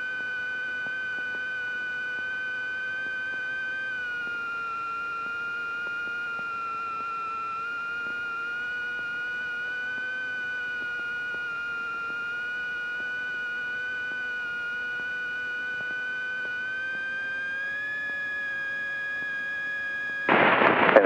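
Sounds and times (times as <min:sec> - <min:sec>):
high-pitched whine: 0:00.0 - 0:21.0
low hum: 0:00.0 - 0:21.0.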